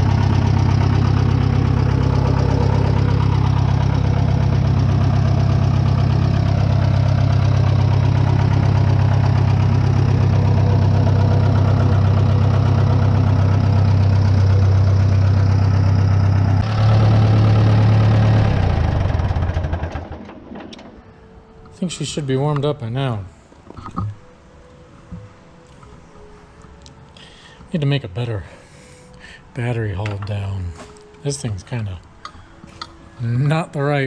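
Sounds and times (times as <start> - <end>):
air-cooled engine idling: 0.0 - 20.2
engine running down to a stop: 0.0 - 21.3.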